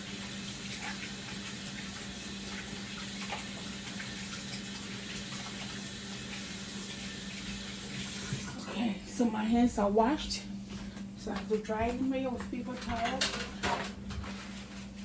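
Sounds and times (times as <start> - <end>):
hands washing under water: 0.0 - 8.6
tap running: 0.0 - 8.7.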